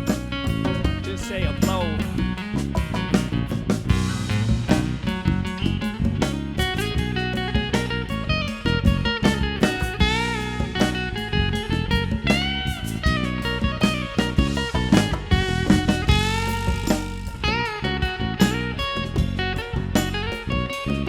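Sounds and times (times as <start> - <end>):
drums: 0.0 - 21.0
electric guitar lead with bent notes: 0.0 - 21.0
strummed rhythm guitar: 0.0 - 21.0.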